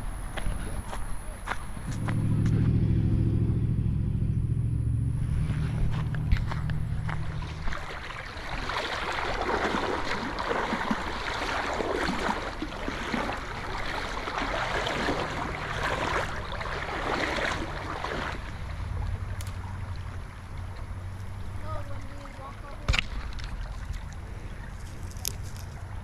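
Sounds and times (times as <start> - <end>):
low steady hum: 0.0 - 26.0
river water rushing: 5.2 - 24.9.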